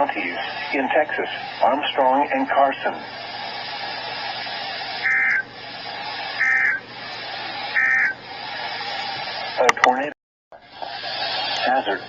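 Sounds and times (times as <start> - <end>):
radio hiss: 0.0 - 12.0
short electronic data buzzes: 5.1 - 5.5.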